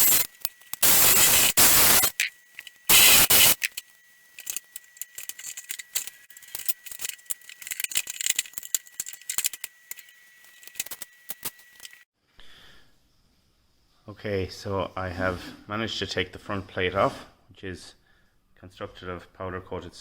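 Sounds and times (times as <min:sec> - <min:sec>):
metal casing rattling scrapes: 0:00.0 - 0:12.0
screws clicking and rattling: 0:00.0 - 0:12.0.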